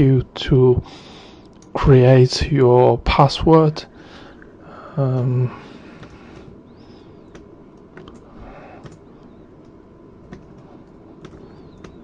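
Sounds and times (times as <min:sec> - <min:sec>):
low room noise: 0:00.0 - 0:12.0
keyboard keys clicking: 0:07.3 - 0:12.0.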